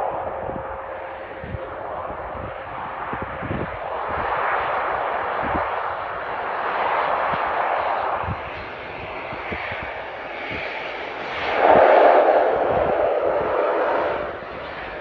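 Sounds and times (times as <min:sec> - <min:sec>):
turboprop engines droning: 0:00.0 - 0:15.0.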